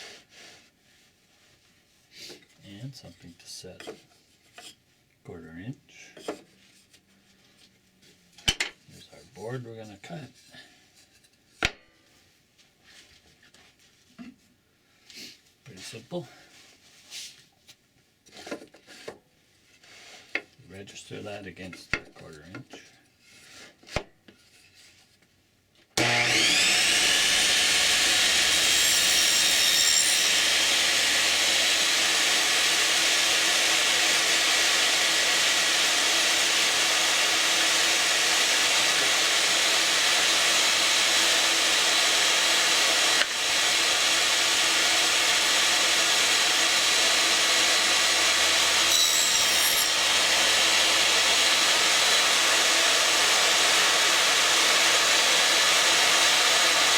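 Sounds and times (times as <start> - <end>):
saw cutting wooden board: 26.0 - 56.9
table saw whining: 26.0 - 56.9.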